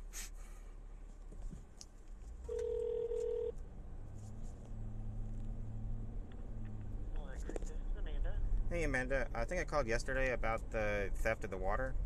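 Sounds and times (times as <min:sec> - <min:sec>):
low hum on phone line: 0:02.4 - 0:03.6
telephone beep: 0:02.5 - 0:03.5.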